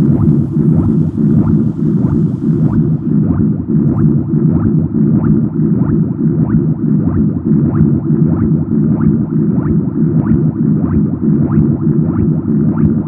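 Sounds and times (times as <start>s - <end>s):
rising blip: 0.0s - 5.5s
low bubbling liquid: 0.0s - 9.2s.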